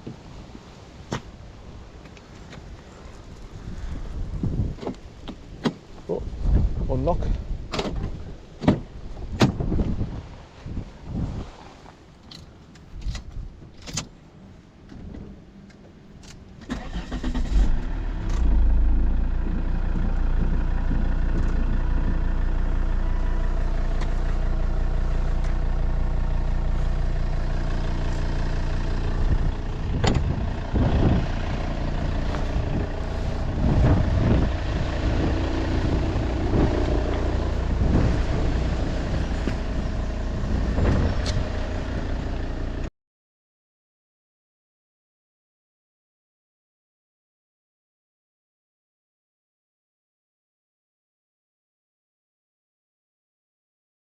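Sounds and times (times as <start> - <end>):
car engine starting and idling: 13.8 - 42.9.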